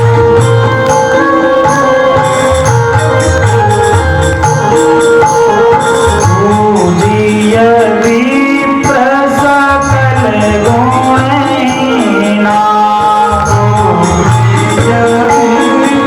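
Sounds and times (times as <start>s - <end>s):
hand drums: 0.0s - 16.0s
held instrument tones: 0.0s - 16.0s
person singing devotional verse: 6.4s - 16.0s.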